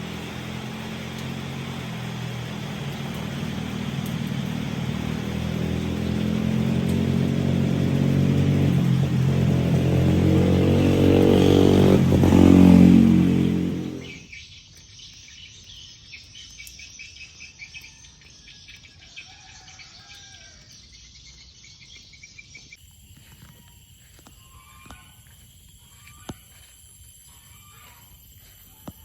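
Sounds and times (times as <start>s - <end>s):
vehicle engine running loudly: 0.0s - 14.2s
insects chirping: 0.0s - 17.1s, 20.9s - 29.0s.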